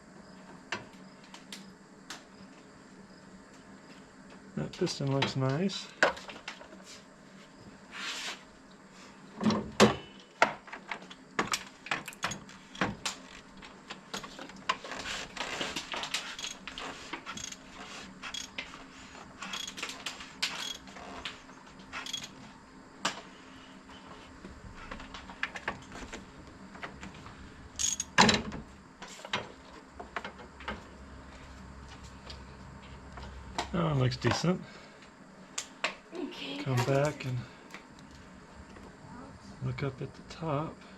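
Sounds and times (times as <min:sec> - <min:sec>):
hand tools clicking and scraping: 0:14.1 - 0:22.4, 0:27.8 - 0:28.2.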